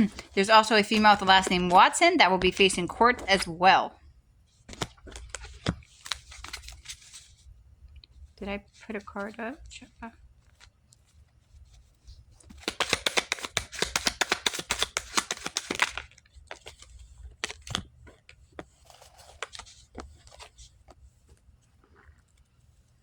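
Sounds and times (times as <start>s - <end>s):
cards being shuffled: 0.0s - 3.7s, 4.5s - 7.5s, 10.4s - 22.9s
card snaps and rustles: 4.6s - 7.3s, 12.4s - 21.0s.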